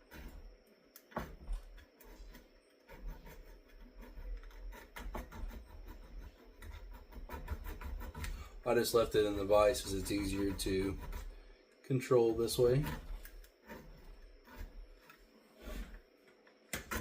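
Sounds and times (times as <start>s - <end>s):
hand file scraping steel: 2.0s - 11.4s, 12.2s - 16.0s, 16.8s - 17.0s.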